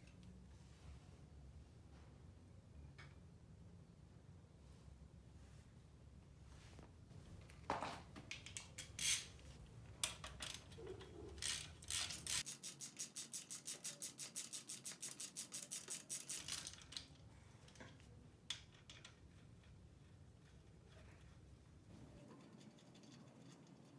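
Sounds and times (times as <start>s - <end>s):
metal tools clicking and knocking: 10.0s - 19.8s
ratchet wrench clicking rapidly: 11.4s - 17.0s.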